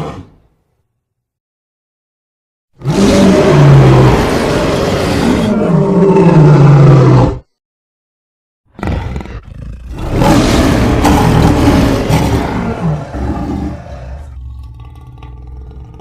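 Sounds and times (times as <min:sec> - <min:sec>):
giant ape roaring: 0:00.0 - 0:00.5, 0:02.8 - 0:07.5, 0:08.7 - 0:16.0.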